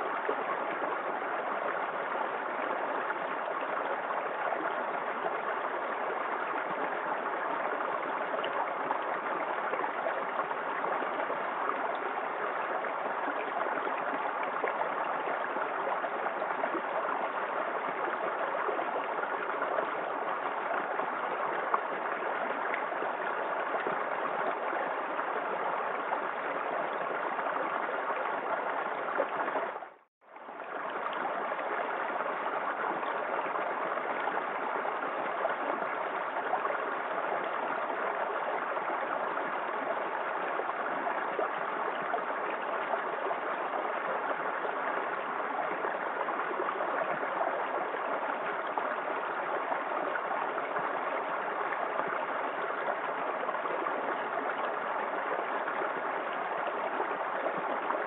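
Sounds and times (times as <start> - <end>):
small waterfall splashing: 0.0 - 58.0.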